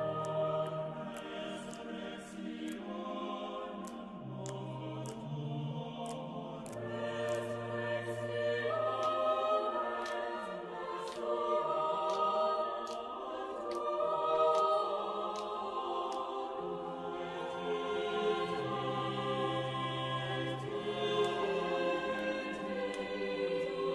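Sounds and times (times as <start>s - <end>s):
choir-like voices holding notes: 0.0s - 23.9s
light ticks: 0.2s - 2.8s, 3.7s - 5.2s, 6.0s - 7.6s, 9.0s - 9.3s, 10.0s - 10.3s, 11.0s - 11.3s, 12.0s - 16.3s.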